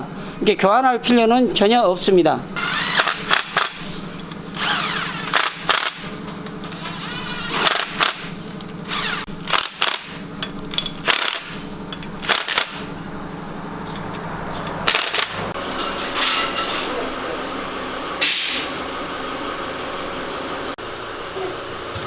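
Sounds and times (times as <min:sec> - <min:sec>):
air tool bursts: 0:02.6 - 0:03.9, 0:18.2 - 0:18.7.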